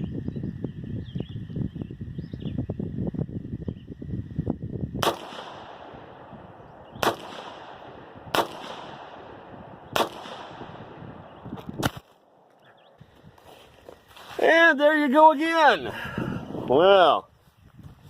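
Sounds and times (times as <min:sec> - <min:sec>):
rifle shots: 0:05.0 - 0:12.4.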